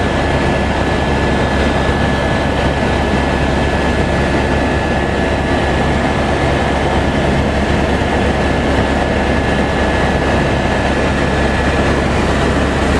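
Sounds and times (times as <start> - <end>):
helicopter engine and rotor rumble: 0.0 - 12.9.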